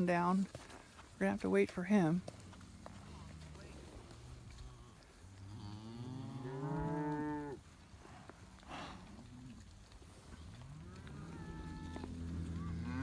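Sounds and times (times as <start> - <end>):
cattle mooing: 2.6 - 7.6, 10.5 - 13.0.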